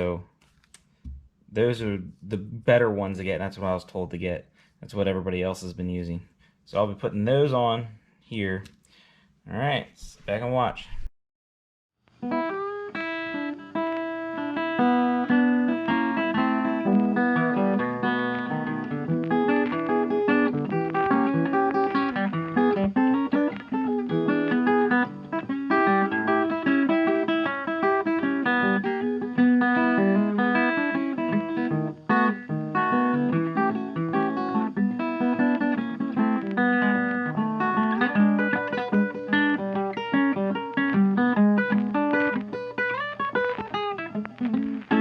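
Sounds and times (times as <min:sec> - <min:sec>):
acoustic guitar playing: 0:12.2 - 0:45.0.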